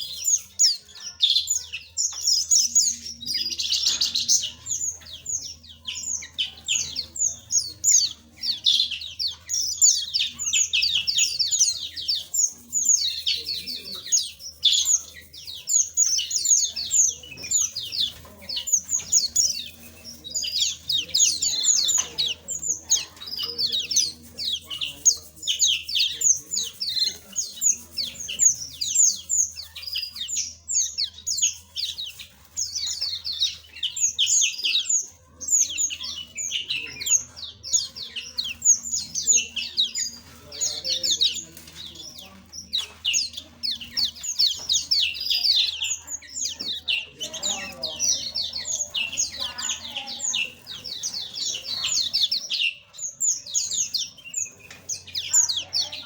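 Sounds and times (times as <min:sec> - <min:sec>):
small birds chirping: 0:00.0 - 0:56.0.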